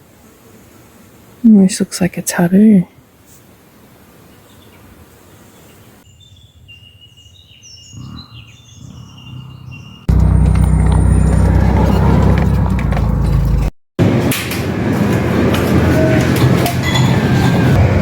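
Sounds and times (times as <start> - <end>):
forest birds singing: 4.3 - 12.1
vehicle engine rumble: 9.8 - 18.0.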